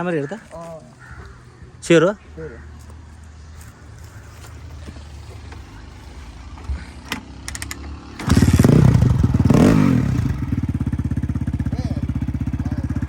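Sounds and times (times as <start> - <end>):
dirt bike engine starting and idling: 4.7 - 13.0
clicks: 7.1 - 8.0.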